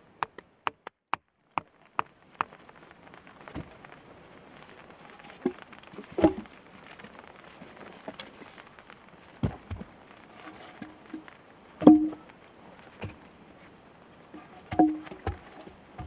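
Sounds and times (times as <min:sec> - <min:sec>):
faint steady hiss: 0:00.0 - 0:16.0
sharp knocks: 0:11.8 - 0:12.2, 0:14.7 - 0:15.4.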